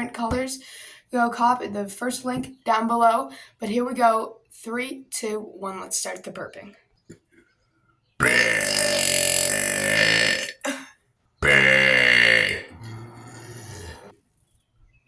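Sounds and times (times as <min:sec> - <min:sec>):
person burping loudly: 0:08.2 - 0:14.1.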